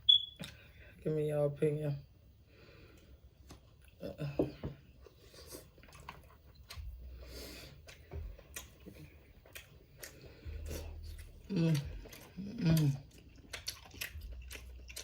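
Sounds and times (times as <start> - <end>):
person chewing: 5.0 - 15.0.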